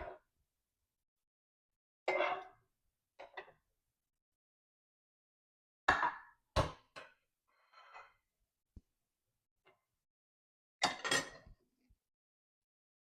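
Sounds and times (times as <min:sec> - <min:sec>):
dishes and utensils clattering: 0:10.8 - 0:11.6.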